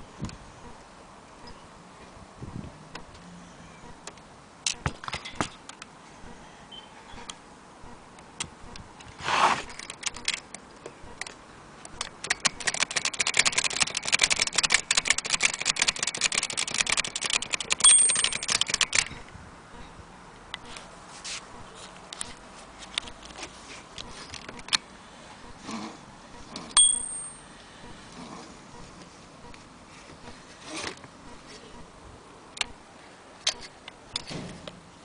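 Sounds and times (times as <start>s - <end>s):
typewriter keys clacking: 12.2s - 19.1s
typewriter bell ring: 17.8s - 18.8s, 26.8s - 27.5s.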